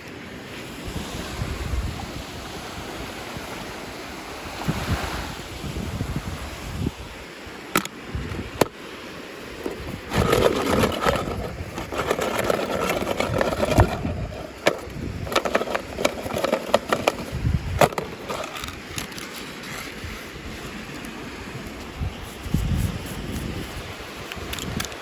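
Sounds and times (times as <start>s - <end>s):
packaging rustling and scraping: 9.6s - 23.8s.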